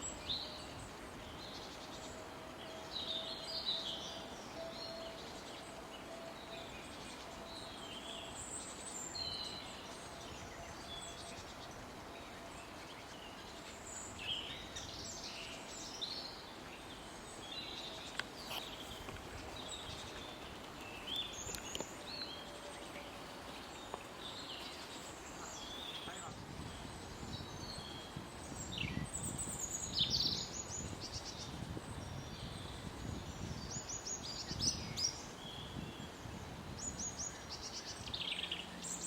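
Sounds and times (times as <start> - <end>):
faint steady tone: 0.0 - 28.5
forest ambience hiss: 0.0 - 39.0
small birds chirping: 0.0 - 39.0.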